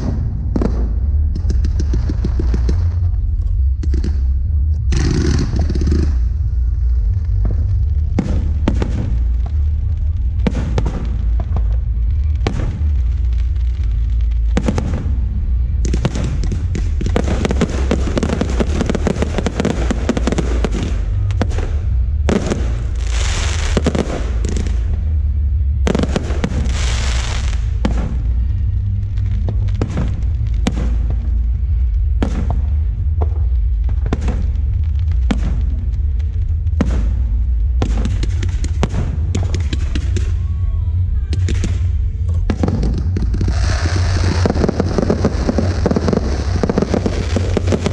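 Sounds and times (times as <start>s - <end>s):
crackling firework bursts: 0.0s - 40.6s, 41.3s - 47.9s
low rumble: 0.0s - 47.9s
hissing crackle bursts: 3.8s - 25.2s, 25.9s - 40.4s, 41.3s - 47.9s
firework shell bursts and booms: 25.9s - 28.2s, 41.4s - 47.9s.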